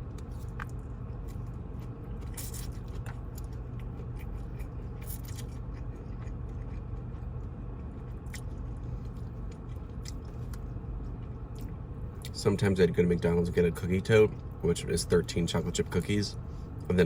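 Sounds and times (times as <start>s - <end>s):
chewing and biting food: 0.0s - 12.4s
steady low hum: 0.0s - 17.0s.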